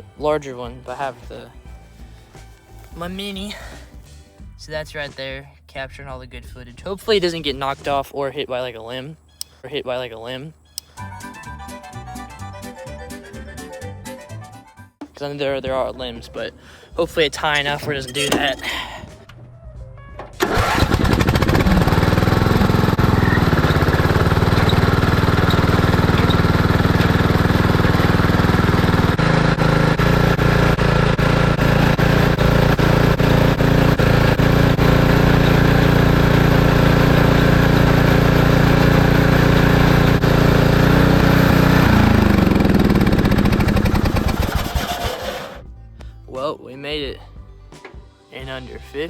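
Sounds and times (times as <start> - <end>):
small vehicle engine running: 20.4 - 45.6.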